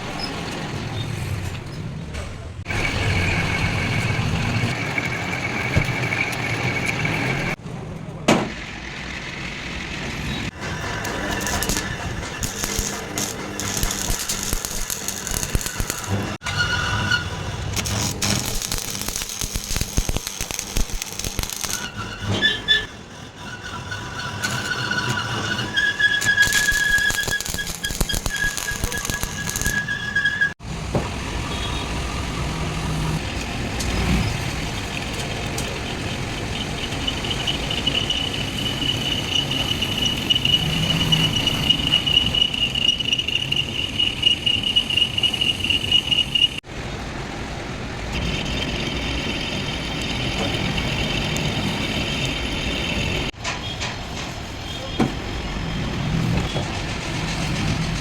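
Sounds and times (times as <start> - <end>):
high-pitched squeal: 2.7 - 7.6, 10.1 - 30.6, 33.9 - 46.7, 48.1 - 53.4
metalworking machinery running: 2.7 - 7.6, 8.6 - 30.3, 32.4 - 53.4.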